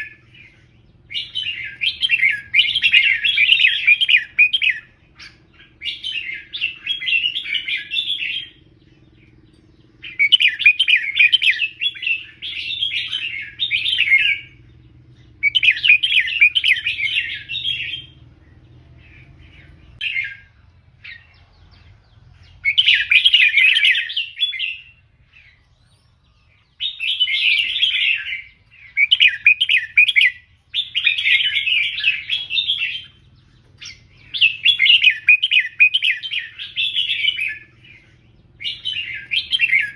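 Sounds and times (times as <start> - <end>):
bird warbling song: 0.0 - 39.9.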